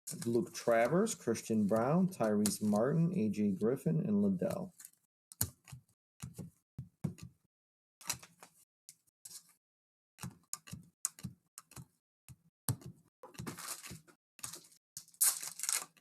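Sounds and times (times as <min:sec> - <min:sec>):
wrappers rustling: 0:13.5 - 0:16.0.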